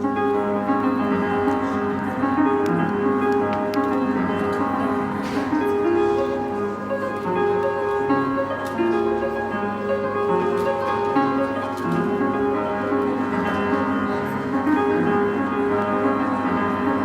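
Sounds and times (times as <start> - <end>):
piano held notes and chords: 0.0 - 17.0.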